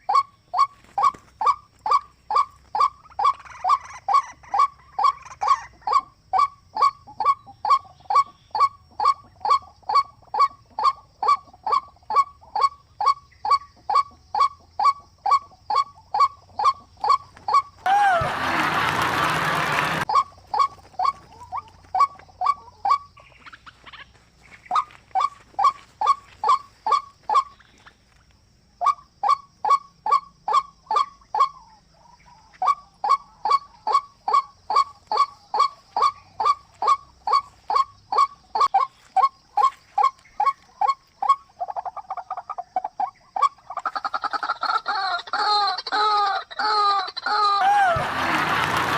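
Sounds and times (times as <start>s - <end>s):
bird calling and trilling: 0.0s - 18.3s.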